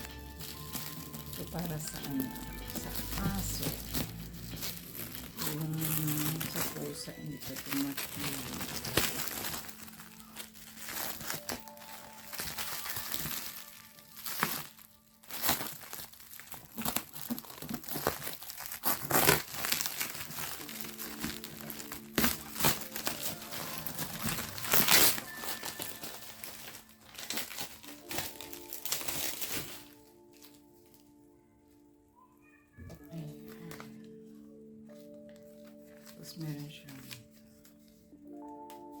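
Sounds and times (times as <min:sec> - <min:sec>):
packaging crinkling and rustling: 0:00.0 - 0:31.3, 0:32.8 - 0:39.0
quiet background music: 0:00.0 - 0:39.0.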